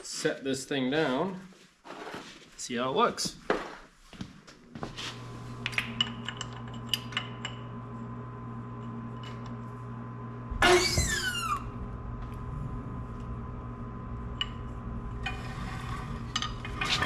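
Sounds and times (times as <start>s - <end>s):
steady hum: 5.0s - 17.0s
loud squeal sliding down in pitch: 10.6s - 11.8s.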